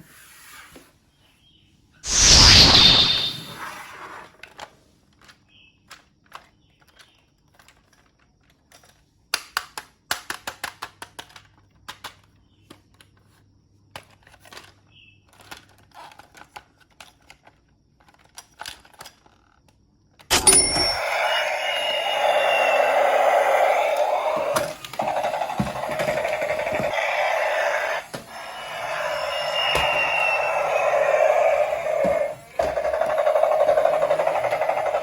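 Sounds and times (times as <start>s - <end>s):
plastic toy pieces clicking: 5.8s - 12.3s.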